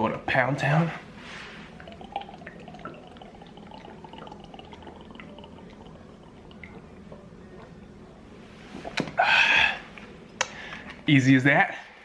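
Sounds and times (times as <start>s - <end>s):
liquid glugging as gulped: 1.5s - 7.8s.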